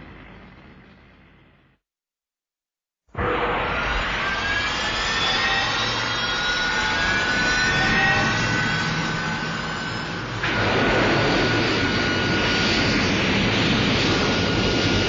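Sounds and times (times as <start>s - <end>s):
jet-like roar: 7.2s - 15.0s.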